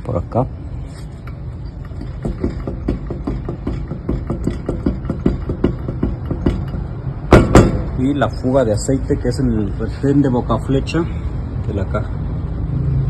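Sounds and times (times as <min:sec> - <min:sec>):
wheel bearing knocking: 0:01.2 - 0:08.2.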